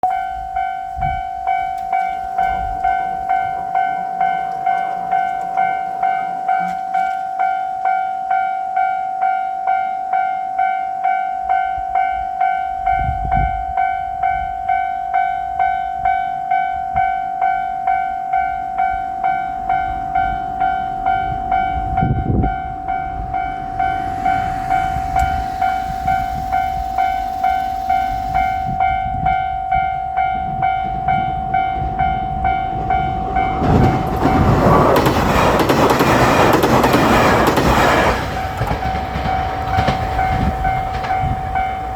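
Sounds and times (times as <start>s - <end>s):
diesel railcar rumbling past: 0.0s - 8.9s, 17.4s - 41.9s
railroad crossing bell ringing: 0.0s - 41.9s.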